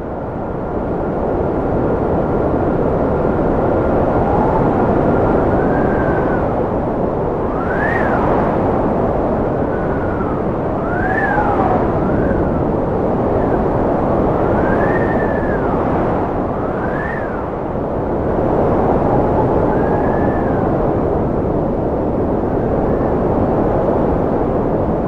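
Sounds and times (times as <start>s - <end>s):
strong wind whistling: 0.0s - 25.0s.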